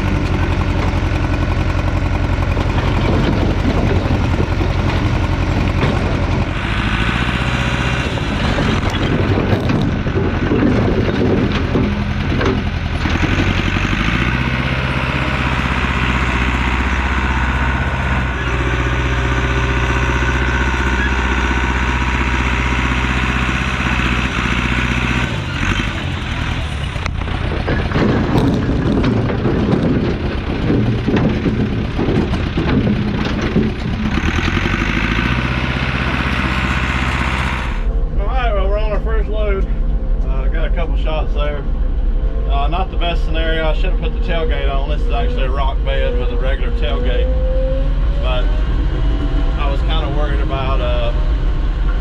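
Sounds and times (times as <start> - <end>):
rattling and clatter: 0.0 - 38.2
track loader engine running: 0.0 - 52.0.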